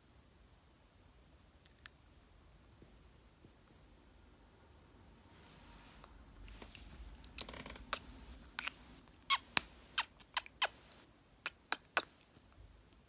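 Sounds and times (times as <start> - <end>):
soft breathing: 5.3 - 10.1
lip smacks and kissing pops: 7.9 - 12.4.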